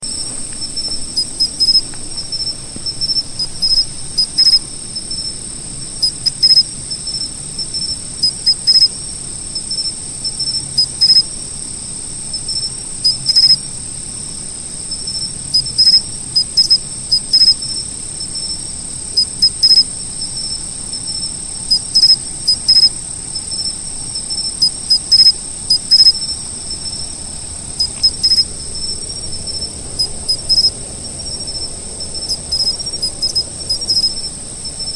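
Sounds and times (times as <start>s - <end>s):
high-pitched insect trill: 0.0s - 34.9s
insect chirping in rapid clusters: 0.0s - 34.9s.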